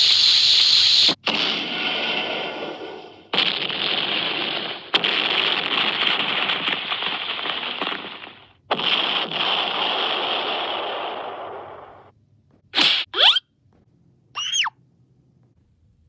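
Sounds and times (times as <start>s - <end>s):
rapid cartoon crackling: 0.0s - 12.1s.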